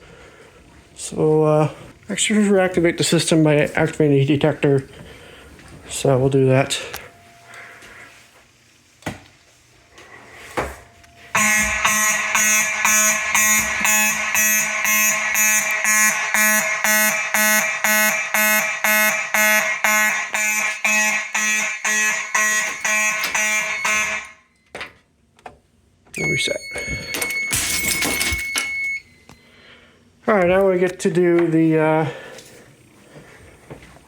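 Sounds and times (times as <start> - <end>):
fire alarm horns buzzing: 10.9 - 24.7, 26.1 - 29.7.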